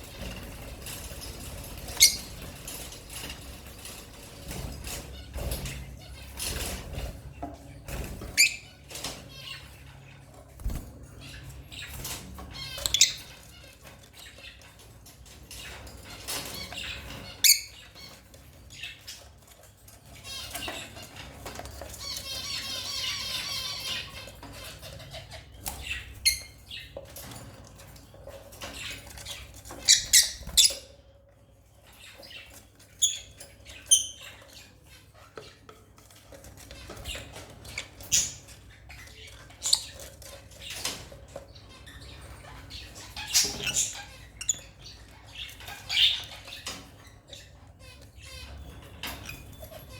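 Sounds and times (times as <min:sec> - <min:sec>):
lovebirds squawking: 0:01.8 - 0:02.4.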